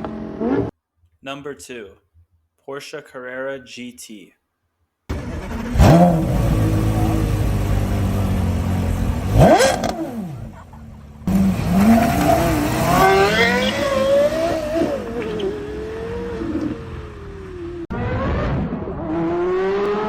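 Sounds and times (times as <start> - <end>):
sports car engine revving: 5.1 - 20.0.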